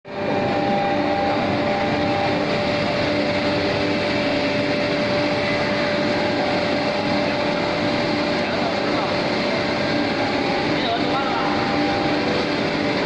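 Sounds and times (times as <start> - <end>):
cnc router running: 0.1 - 13.0.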